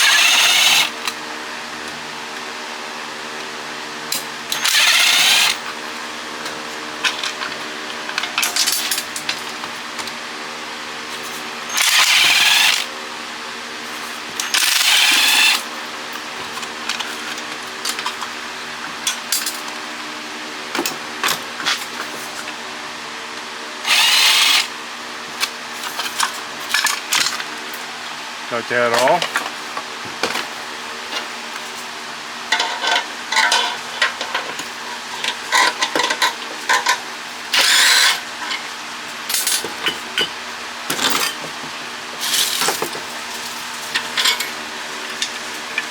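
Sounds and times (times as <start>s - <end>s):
handheld power tool bursts: 0.0s - 1.0s, 4.5s - 5.6s, 11.7s - 12.9s, 14.4s - 15.7s, 23.8s - 24.7s, 37.6s - 38.2s
metal clinks and knocks: 32.5s - 37.0s.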